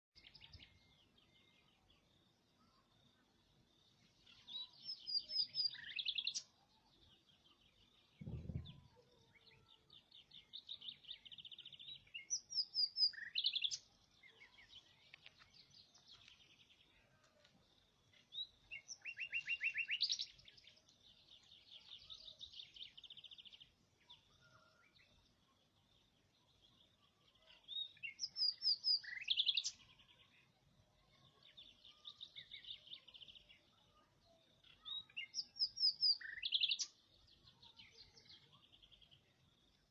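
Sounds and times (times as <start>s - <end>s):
low thump: 8.2s - 8.9s.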